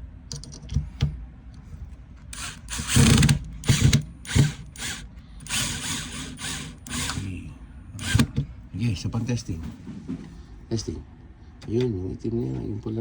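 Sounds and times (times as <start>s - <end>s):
electric drill driving screws: 2.3s - 7.3s, 8.0s - 8.4s.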